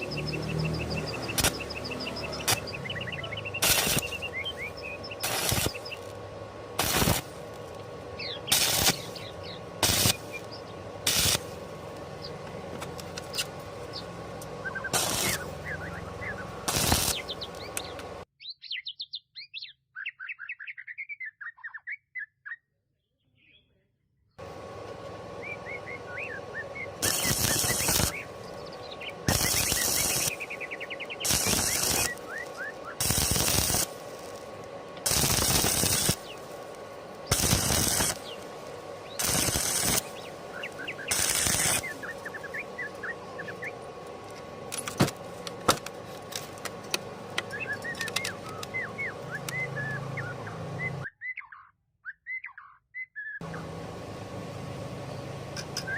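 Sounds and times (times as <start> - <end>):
arc welding crackling: 0.0 - 18.2, 24.4 - 50.2
birds chirping: 0.0 - 55.9
sharp clicks: 1.0 - 2.8, 44.7 - 48.8.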